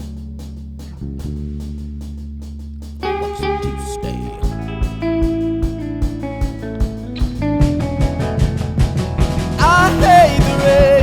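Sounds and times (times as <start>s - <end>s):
held low notes: 0.0s - 11.0s
guitar lead line: 3.0s - 11.0s
kick drum beat: 4.4s - 11.0s.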